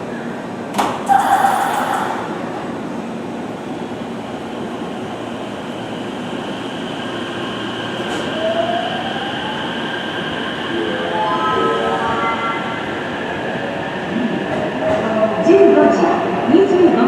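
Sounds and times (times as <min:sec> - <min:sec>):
train wheels rumbling on rail: 0:00.0 - 0:08.6, 0:12.9 - 0:17.0
train whine: 0:00.0 - 0:16.8.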